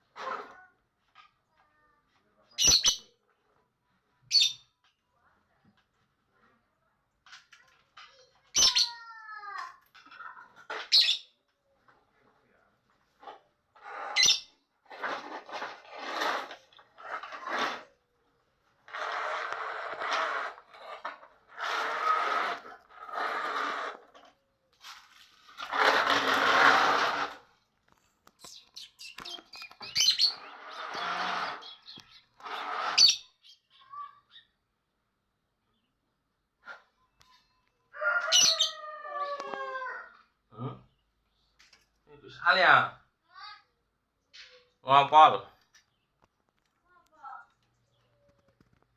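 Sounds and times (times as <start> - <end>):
bird chirping and chattering: 2.5 - 3.2, 8.1 - 9.1, 10.8 - 11.4, 28.3 - 34.6.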